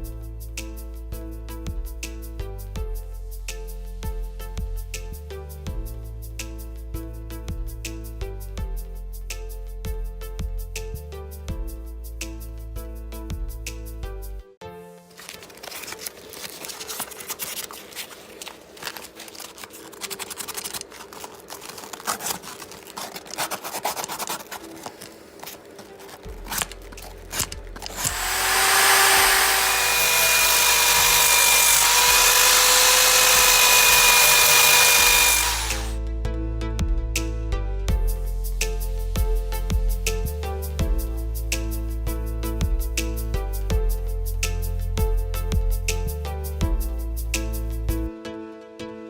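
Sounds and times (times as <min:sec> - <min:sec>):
clicks and scraping on metal parts: 0:15.2 - 0:28.2
power tool running: 0:26.5 - 0:36.0.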